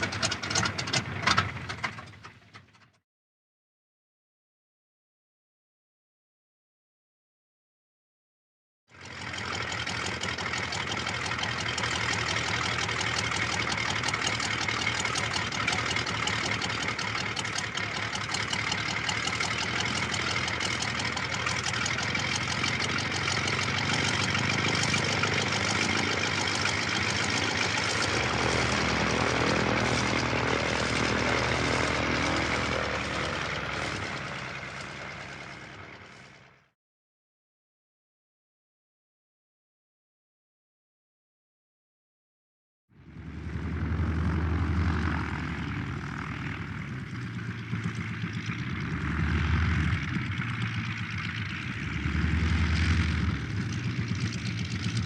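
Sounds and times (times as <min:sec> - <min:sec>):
propeller plane engine: 0:00.0 - 0:03.0, 0:08.9 - 0:36.7, 0:42.9 - 0:55.0.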